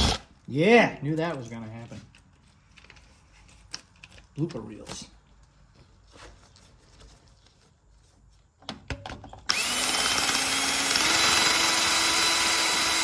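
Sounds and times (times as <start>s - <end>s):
electric drill whining: 0.0s - 0.3s, 9.5s - 13.0s.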